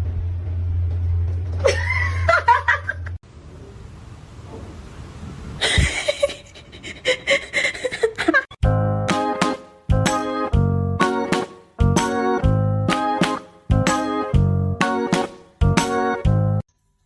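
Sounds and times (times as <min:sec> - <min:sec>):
people laughing: 0:01.7 - 0:03.2.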